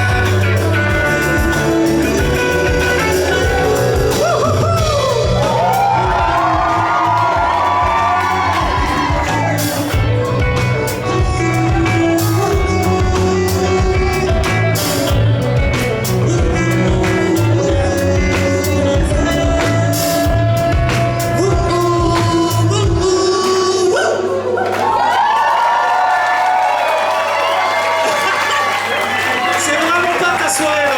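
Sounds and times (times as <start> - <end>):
rock band playing live: 0.0 - 24.0
person singing: 0.0 - 24.7.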